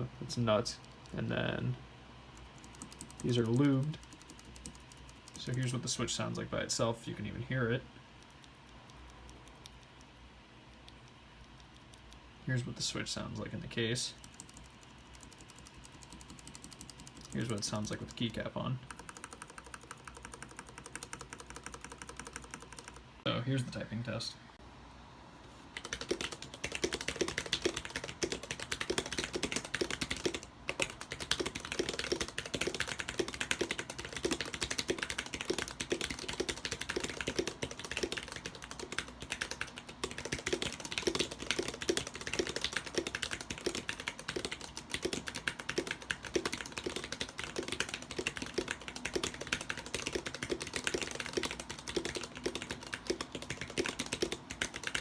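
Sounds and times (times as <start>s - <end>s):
fast mechanical keyboard typing: 2.4s - 6.1s, 8.2s - 10.0s, 10.7s - 12.2s, 14.0s - 23.1s, 25.8s - 55.0s.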